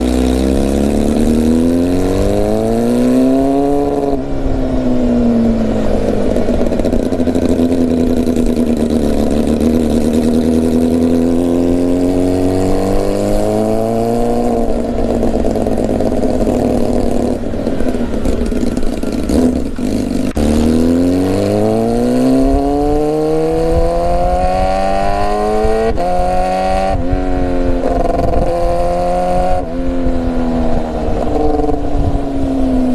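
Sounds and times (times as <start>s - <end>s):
motorcycle engine accelerating: 0.0s - 32.9s.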